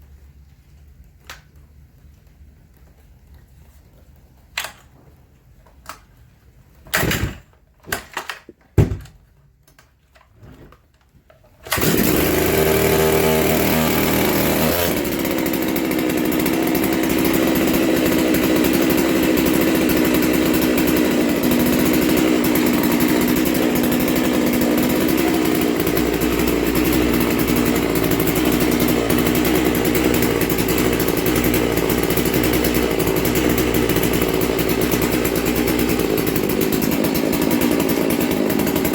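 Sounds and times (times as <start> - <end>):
chainsaw running: 11.6 - 38.9.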